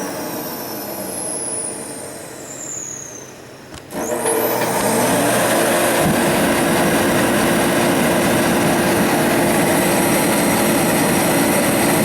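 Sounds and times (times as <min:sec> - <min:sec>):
heater blower fan humming: 0:03.6 - 0:12.0.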